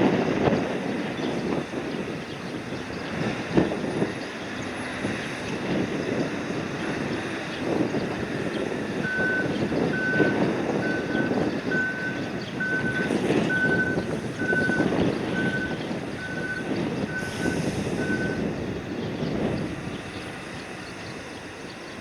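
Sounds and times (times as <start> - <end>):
electronic warning beeps: 9.0 - 18.4.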